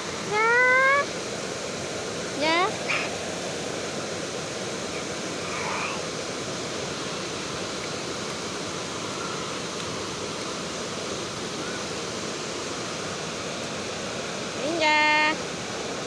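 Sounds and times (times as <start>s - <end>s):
waterfall rushing: 0.0s - 16.0s
faint voice: 0.3s - 1.1s, 2.4s - 3.1s, 4.9s - 6.1s.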